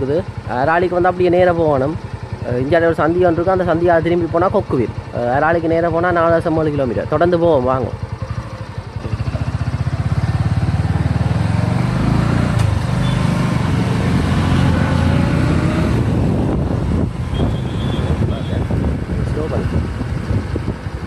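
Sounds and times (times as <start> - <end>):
motorcycle engine pulling away: 7.6 - 19.2.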